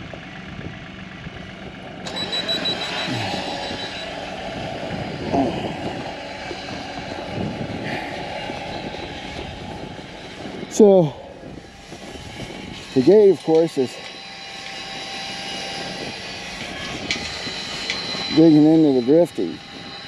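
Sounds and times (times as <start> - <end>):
short falling squeaks: 2.1 - 4.2.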